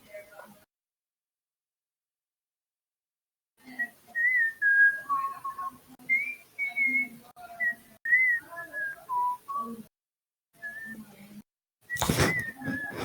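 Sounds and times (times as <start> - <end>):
person whistling a tune: 4.2 - 5.4, 12.0 - 13.0.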